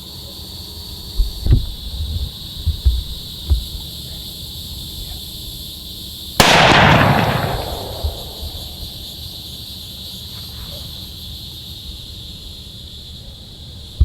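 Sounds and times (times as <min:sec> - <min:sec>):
rifle shot with echo: 0:06.4 - 0:09.0.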